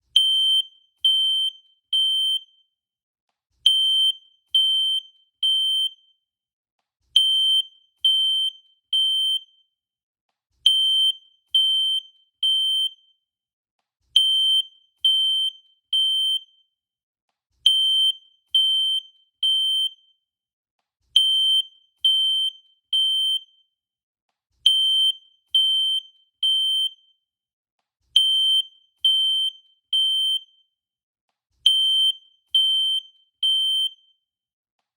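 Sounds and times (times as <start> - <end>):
fire alarm beeping: 28.2 - 30.6, 31.7 - 34.1.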